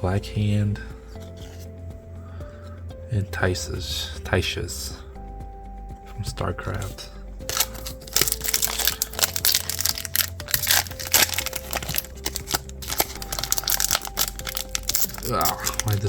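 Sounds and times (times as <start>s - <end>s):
card pack wrapper crinkling: 7.4s - 16.0s.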